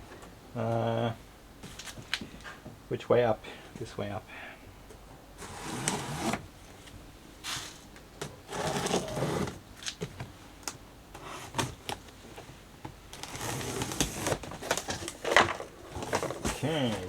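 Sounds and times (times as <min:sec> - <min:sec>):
cardboard scraping and rustling: 0:05.4 - 0:06.5, 0:07.4 - 0:10.0, 0:13.2 - 0:17.0.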